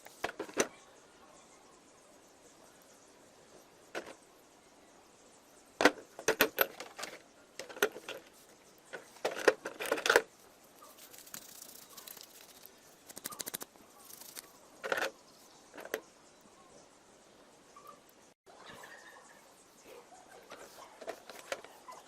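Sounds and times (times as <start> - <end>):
small metal parts clicking: 10.9 - 15.1.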